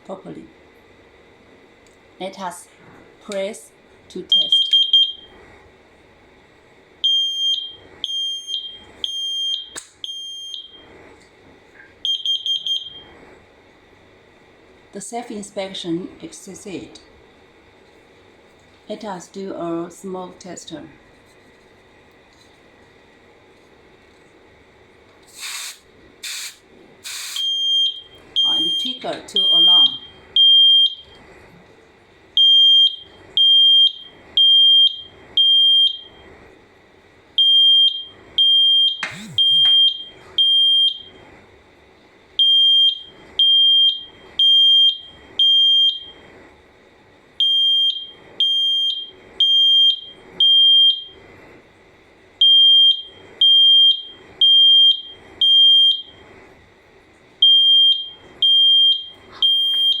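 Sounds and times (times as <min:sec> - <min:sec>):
smoke alarm beeping: 0:04.3 - 0:05.3, 0:07.0 - 0:10.8, 0:12.0 - 0:13.1, 0:27.1 - 0:31.1, 0:32.4 - 0:36.2, 0:37.4 - 0:41.1, 0:42.4 - 0:46.2, 0:47.4 - 0:51.2, 0:52.4 - 0:56.2, 0:57.4 - 1:00.0.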